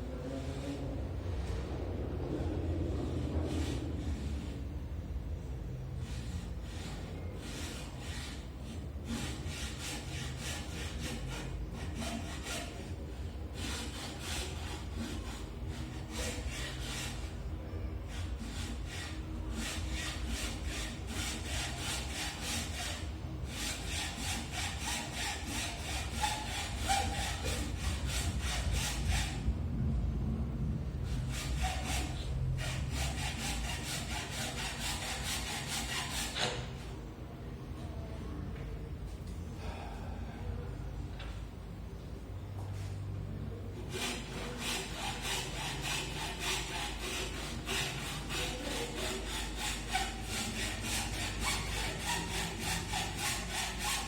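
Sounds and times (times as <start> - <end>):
rhythmic rasping strokes: 3.1 - 29.4, 31.0 - 36.9, 43.6 - 54.0.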